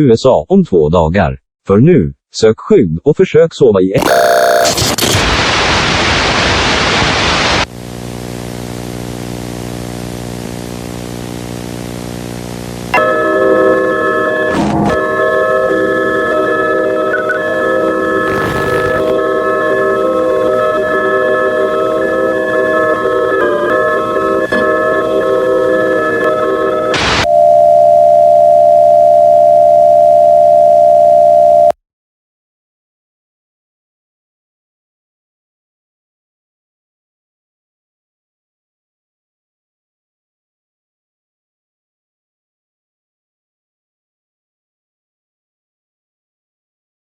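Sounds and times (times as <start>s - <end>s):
electronic chord: 4.0s - 4.8s, 12.9s - 27.7s
loud steady electronic tone: 4.0s - 4.9s, 7.7s - 31.7s
loud static hiss: 4.0s - 12.9s, 18.2s - 19.2s, 26.9s - 27.3s.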